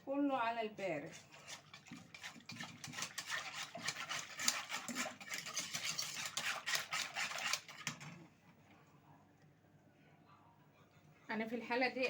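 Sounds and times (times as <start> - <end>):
utensil scraping a pot: 0.8 - 8.2.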